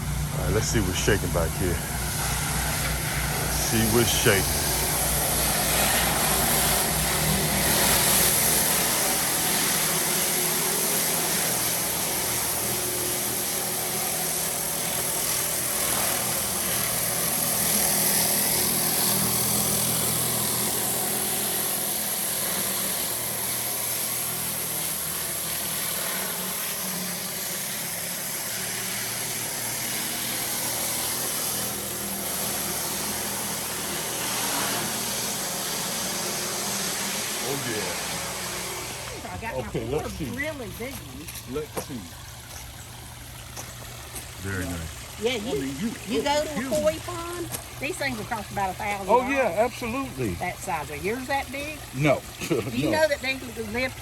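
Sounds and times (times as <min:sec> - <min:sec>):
engine humming: 0:00.0 - 0:22.1, 0:29.8 - 0:54.0
pressure washer hiss: 0:00.0 - 0:40.8.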